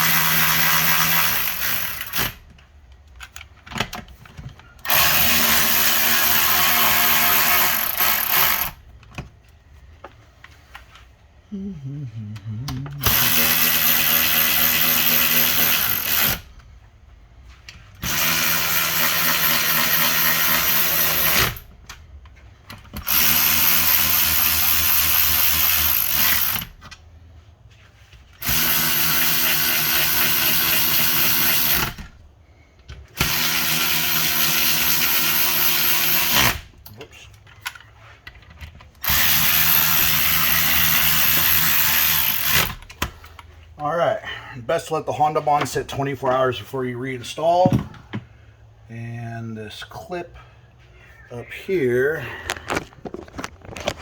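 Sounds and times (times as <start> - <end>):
cordless drill running: 0.0 - 2.4, 4.8 - 8.8, 13.0 - 16.4, 18.0 - 21.7, 23.0 - 26.7, 28.4 - 32.0, 33.2 - 36.6, 39.0 - 42.8.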